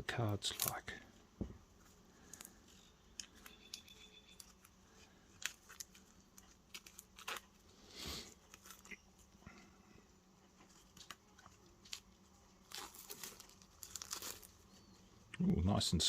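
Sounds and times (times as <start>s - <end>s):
plastic wrap crinkling and tearing: 0.2s - 0.9s, 2.2s - 7.6s, 8.4s - 8.9s, 10.6s - 15.0s.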